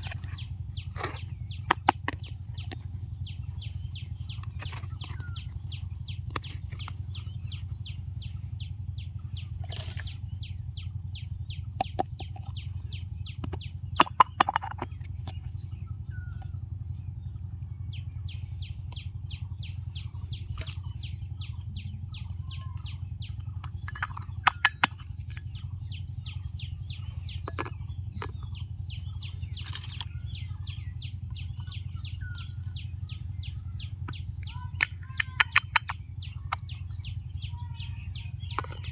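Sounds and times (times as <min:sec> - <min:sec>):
steady low hum: 0:00.0 - 0:38.9
plastic toy pieces clicking: 0:13.4 - 0:15.4, 0:23.6 - 0:25.4, 0:29.6 - 0:30.1, 0:34.1 - 0:36.0.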